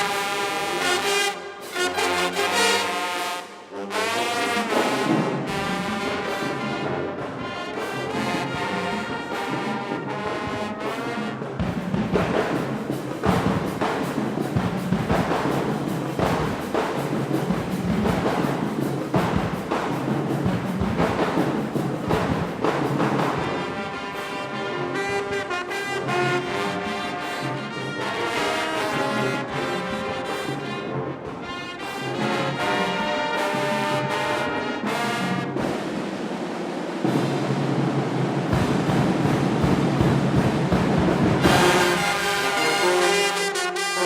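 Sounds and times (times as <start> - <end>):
brass playing sustained chords: 0.0 - 11.5, 41.4 - 44.0
drums steady beat: 0.0 - 44.0.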